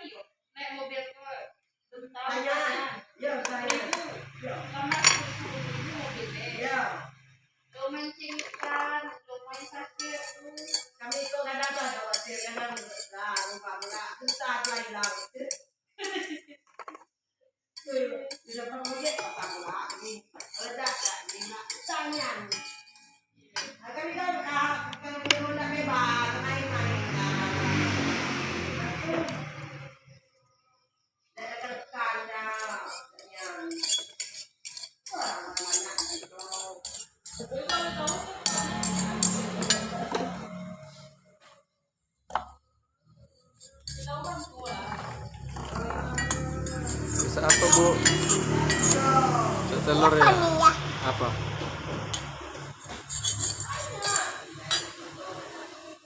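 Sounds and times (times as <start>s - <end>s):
toy dishes clinking: 9.5s - 15.5s, 17.8s - 23.7s, 32.5s - 40.0s, 43.4s - 49.2s, 52.2s - 55.1s
person singing: 37.5s - 41.0s.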